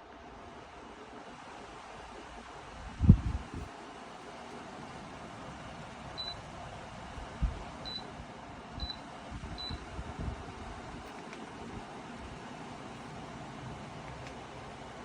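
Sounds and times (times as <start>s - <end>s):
tower fan air rushing: 0.0s - 15.0s
short high fan beeps: 6.2s - 6.5s, 7.8s - 8.1s, 8.8s - 10.0s.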